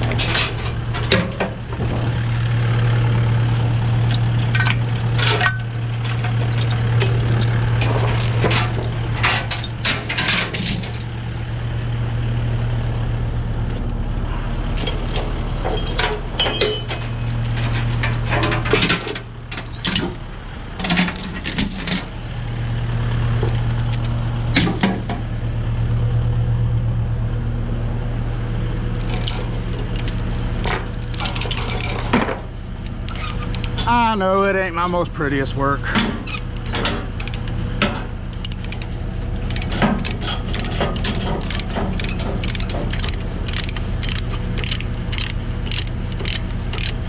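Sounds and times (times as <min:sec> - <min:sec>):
metal clinking and clanking: 0:00.0 - 0:01.6, 0:03.9 - 0:11.1, 0:14.8 - 0:22.1, 0:23.4 - 0:25.2, 0:29.0 - 0:34.0, 0:35.9 - 0:47.0
diesel engine idling: 0:00.0 - 0:21.5, 0:22.1 - 0:47.0.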